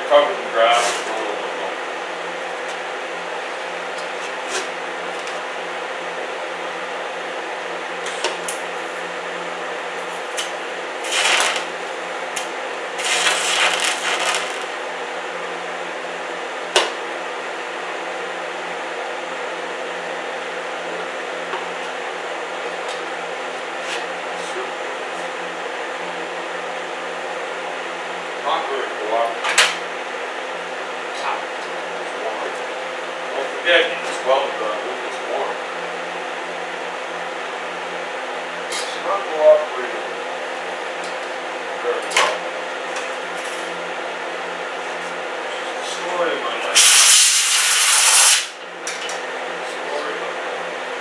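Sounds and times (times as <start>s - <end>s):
welder buzzing: 10.0s - 15.0s, 46.8s - 48.6s
bursts of hiss: 11.0s - 12.0s, 12.9s - 14.8s, 46.8s - 48.5s.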